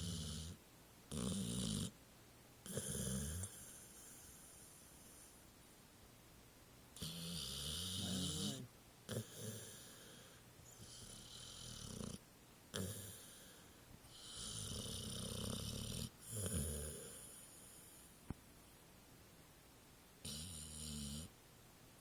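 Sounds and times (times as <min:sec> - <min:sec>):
dog snoring: 0:00.0 - 0:02.0, 0:02.6 - 0:05.3, 0:07.0 - 0:18.1, 0:20.2 - 0:21.3.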